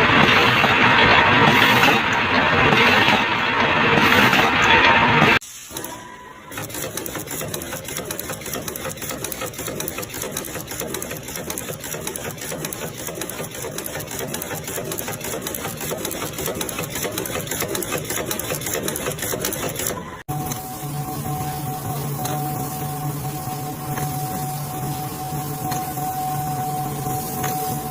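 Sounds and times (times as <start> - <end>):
machine clattering with fine ticks: 6.5 - 20.0.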